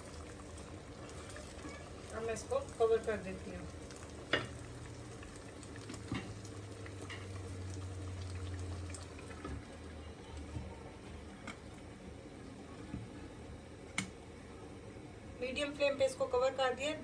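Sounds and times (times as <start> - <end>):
pot bubbling under lid: 0.0 - 10.7.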